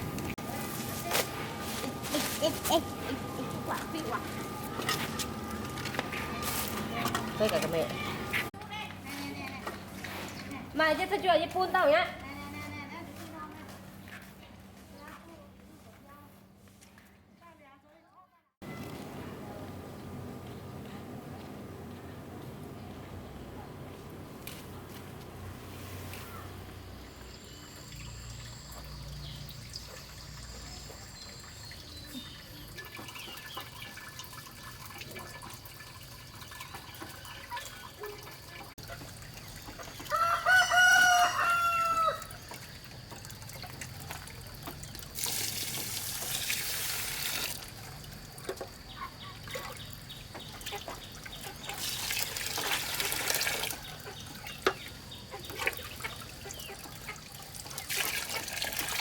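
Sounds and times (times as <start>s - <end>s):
running or splashing water: 27.2s - 59.0s
rooster crowing: 40.0s - 42.4s.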